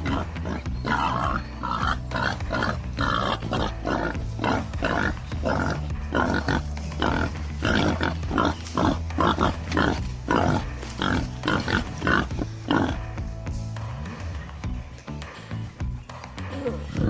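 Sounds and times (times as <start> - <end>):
warthog grunting and squealing: 0.0 - 13.0, 16.5 - 17.0.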